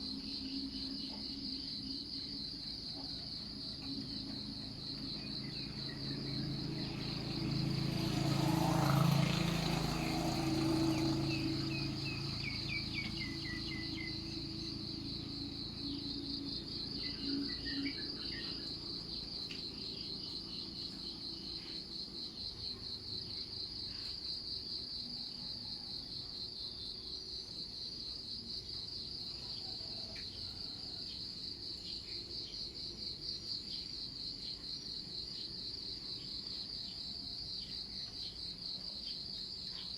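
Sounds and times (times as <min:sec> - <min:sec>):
insects trilling: 0:00.0 - 0:39.9.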